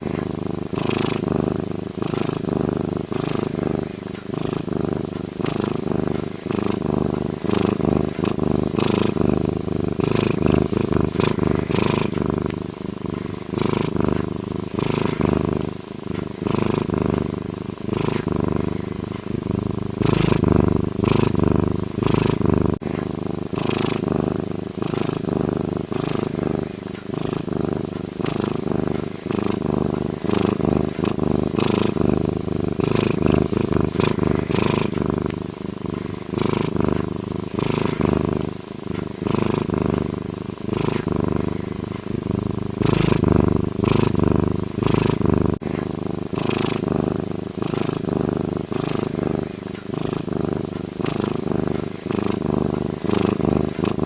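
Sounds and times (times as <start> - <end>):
lynx purring: 2.4 - 54.0.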